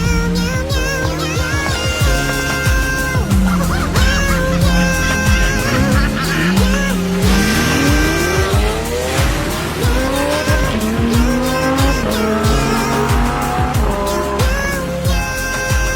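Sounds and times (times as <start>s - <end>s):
electronic music with booming bass: 0.0s - 15.9s.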